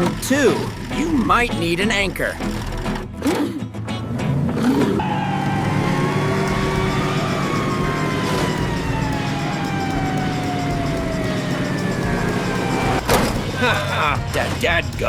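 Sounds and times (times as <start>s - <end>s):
vehicle engine drone: 4.3s - 15.0s
whine falling in pitch: 5.0s - 13.8s.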